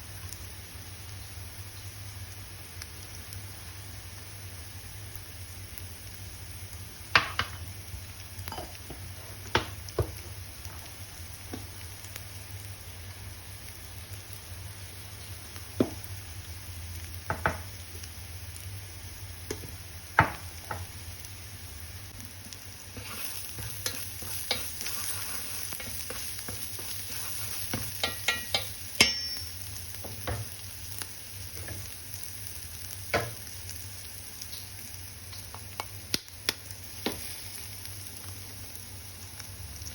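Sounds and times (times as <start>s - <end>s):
food sizzling in a pan: 0.0s - 39.9s
spatula scraping a pan: 22.9s - 28.9s.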